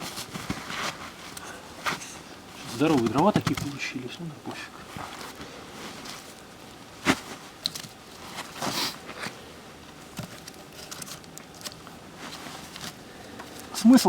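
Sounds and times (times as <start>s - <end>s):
firewood clicks and crunching rustles: 0.0s - 14.0s.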